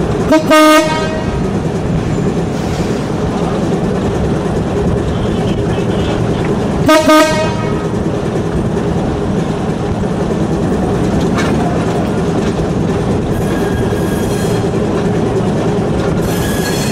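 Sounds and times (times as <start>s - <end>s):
locomotive engine drone: 0.0s - 16.9s
wheels running on rails: 0.0s - 16.9s
wheel clack: 7.8s - 16.9s
high-pitched squeal: 13.3s - 14.8s, 16.2s - 16.9s.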